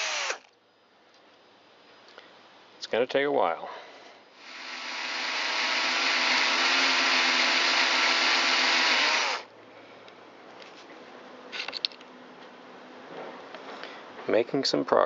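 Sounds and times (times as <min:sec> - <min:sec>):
electric drill drilling metal: 0:00.0 - 0:00.5, 0:04.4 - 0:09.5.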